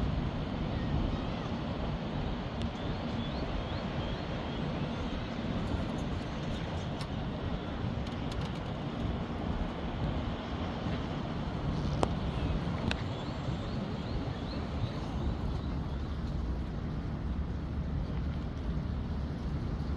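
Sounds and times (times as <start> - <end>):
constant rushing noise: 0.0 - 19.9
low engine drone: 5.6 - 19.9.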